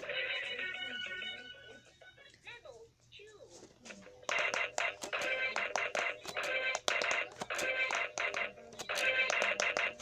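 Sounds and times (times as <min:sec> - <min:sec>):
electronic music with clicking beat: 0:04.3 - 0:10.0.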